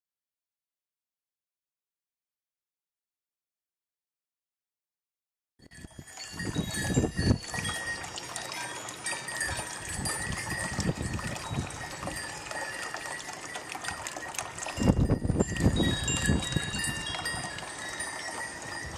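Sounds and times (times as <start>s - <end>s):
wind buffeting microphone: 5.7s - 8.1s, 9.3s - 12.8s, 13.8s - 18.9s
metal chimes ringing: 5.7s - 18.9s.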